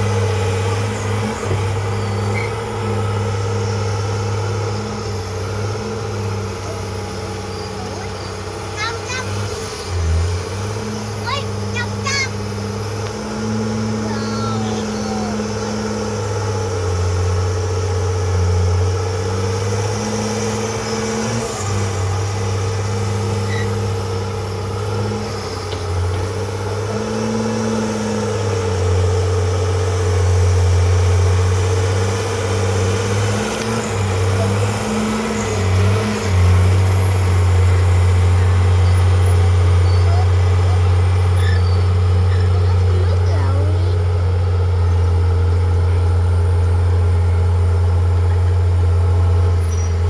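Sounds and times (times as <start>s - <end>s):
diesel engine humming: 0.0s - 50.0s.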